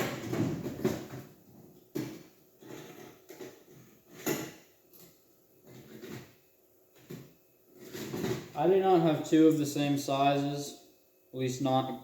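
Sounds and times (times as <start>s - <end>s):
hard objects knocking and clattering: 0.0s - 8.6s.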